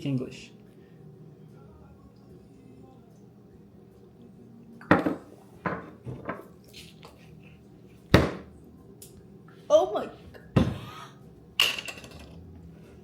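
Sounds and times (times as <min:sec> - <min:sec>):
low room hum: 0:00.0 - 0:13.0
glassware clinking: 0:11.6 - 0:12.4.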